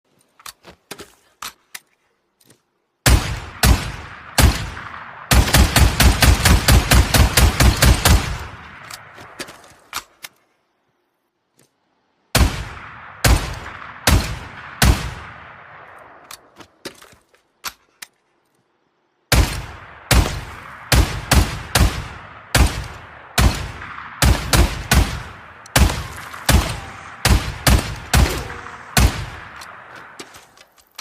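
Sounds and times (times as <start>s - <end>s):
shotgun shots echoing: 3.0s - 9.7s, 12.3s - 16.5s, 19.3s - 30.6s.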